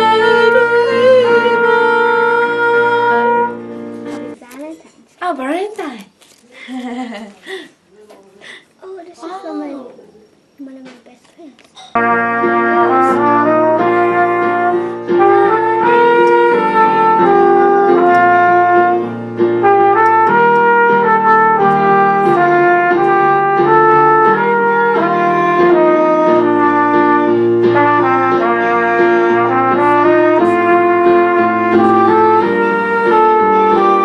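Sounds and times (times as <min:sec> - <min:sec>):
brass melody: 0:00.0 - 0:04.4, 0:11.9 - 0:34.0.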